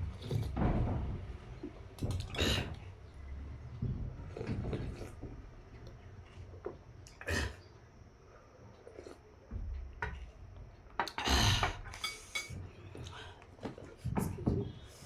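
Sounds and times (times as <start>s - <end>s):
chewing: 4.1s - 7.2s, 8.7s - 9.3s
slurping noodles and soup: 4.2s - 5.4s, 8.8s - 9.3s.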